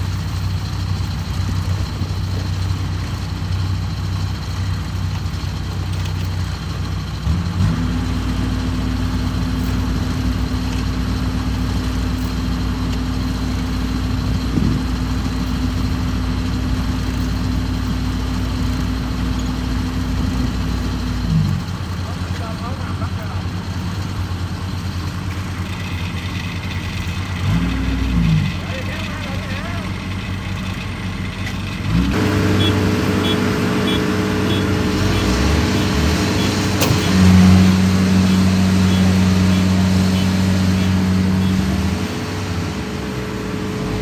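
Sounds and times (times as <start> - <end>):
diesel engine revving: 0.0 - 44.0.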